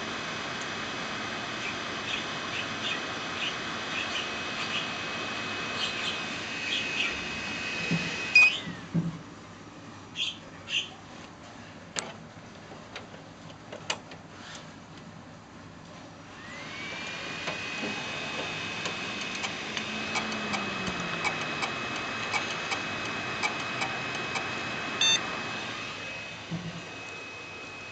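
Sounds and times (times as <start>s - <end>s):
computer high whine: 0.0s - 8.9s, 16.3s - 27.9s
irregular clicks: 18.8s - 25.2s
short loud computer beep: 25.0s - 25.2s.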